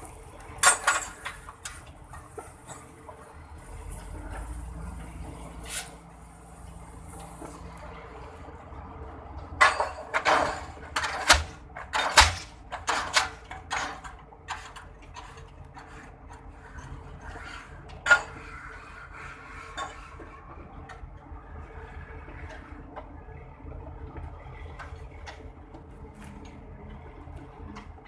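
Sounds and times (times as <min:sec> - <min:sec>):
metal clanking on metal: 0:00.6 - 0:01.8, 0:09.6 - 0:15.9.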